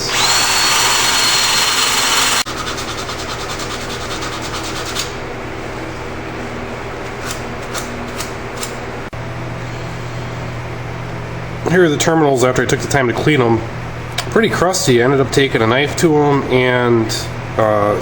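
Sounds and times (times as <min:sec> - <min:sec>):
power tool motor whining: 0:00.0 - 0:02.5.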